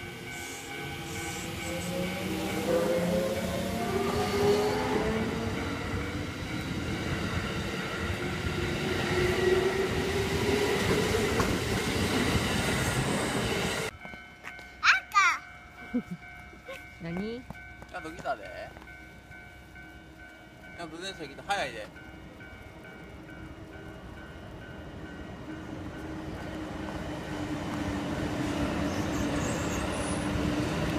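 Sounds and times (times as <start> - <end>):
level crossing warning bell: 0.0 - 10.0, 13.9 - 26.1
train wheels rumbling on rails: 0.0 - 14.6, 15.8 - 30.9.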